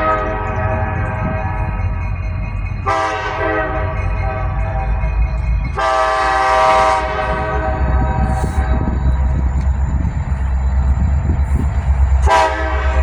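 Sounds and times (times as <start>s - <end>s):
passing train rumble: 0.0s - 13.0s
locomotive air horn blasts: 2.9s - 4.6s, 5.8s - 8.9s, 12.2s - 13.0s.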